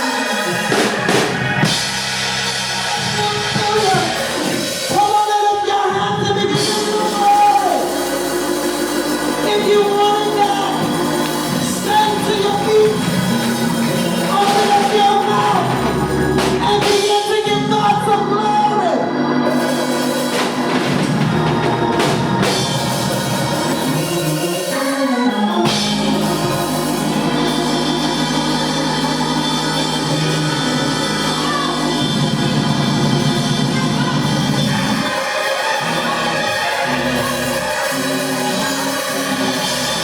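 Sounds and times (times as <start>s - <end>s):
organ playing sustained chords: 0.0s - 40.0s
singing: 0.0s - 40.0s
light drum kit: 6.5s - 17.3s.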